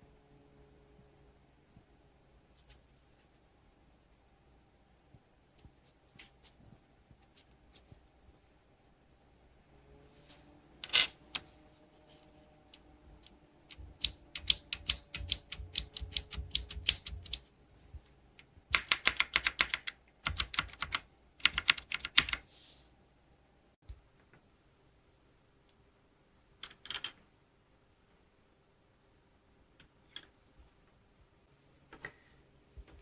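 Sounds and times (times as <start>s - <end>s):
mechanical keyboard typing: 13.2s - 17.4s, 18.7s - 22.5s.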